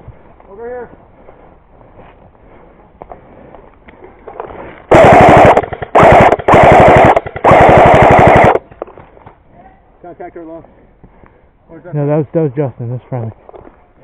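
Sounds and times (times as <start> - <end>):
airsoft gun firing bursts: 4.9 - 8.7.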